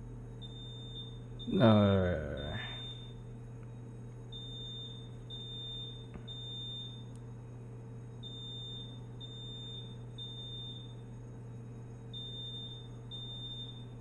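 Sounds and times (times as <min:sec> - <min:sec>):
fire alarm high-pitched beeps: 0:00.4 - 0:03.2, 0:04.3 - 0:07.1, 0:08.2 - 0:11.0, 0:12.0 - 0:14.0.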